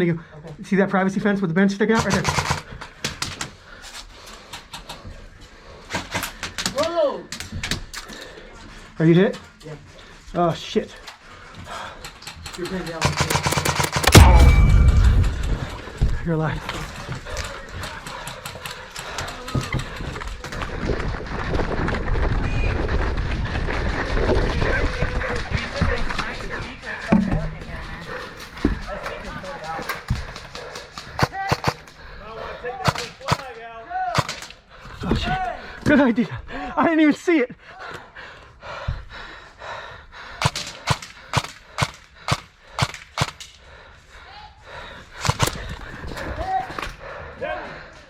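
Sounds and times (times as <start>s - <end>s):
sharp clicks and knocks: 12.4s - 15.9s
airsoft gun shots: 13.1s - 15.9s.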